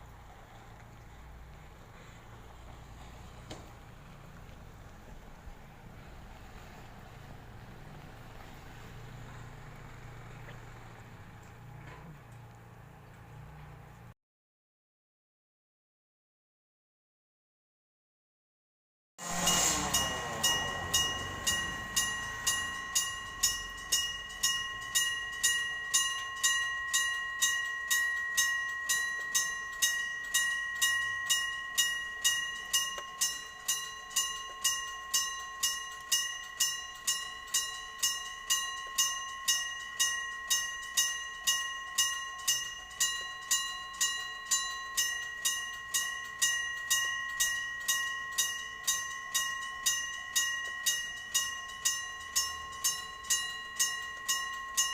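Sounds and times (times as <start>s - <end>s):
level crossing bell ringing: 19.2s - 54.9s.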